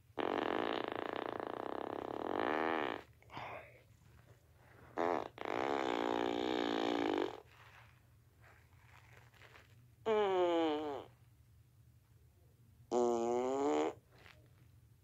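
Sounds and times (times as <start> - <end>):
pitched fart sounds: 0.1 - 3.2, 5.0 - 7.8, 8.8 - 11.2, 12.9 - 14.4.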